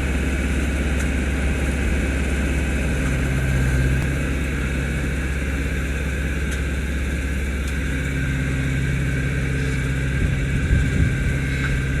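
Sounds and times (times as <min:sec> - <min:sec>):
tractor engine running: 0:00.0 - 0:12.0
uneven low rumble: 0:07.6 - 0:12.0.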